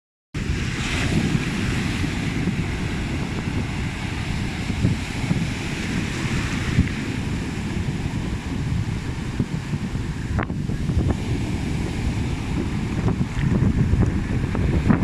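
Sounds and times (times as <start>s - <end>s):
sea surf: 0.4s - 15.0s
wind buffeting the microphone: 0.4s - 15.0s.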